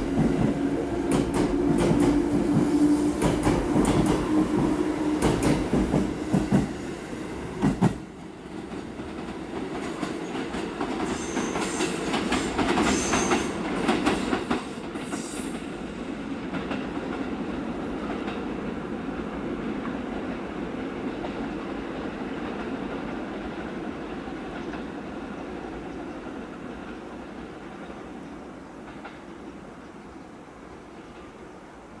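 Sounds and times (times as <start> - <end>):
train rumble: 0.0 - 32.0
train wheels clattering over rail joints: 8.6 - 15.6.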